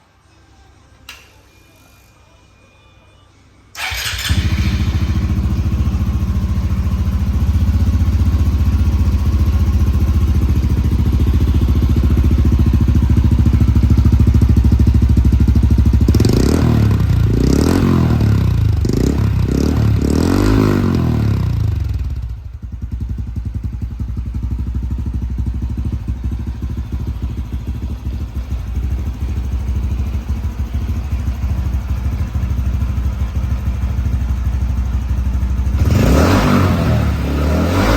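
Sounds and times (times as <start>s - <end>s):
motorcycle engine idling: 3.8s - 37.9s
engine revving in blips: 35.8s - 37.9s.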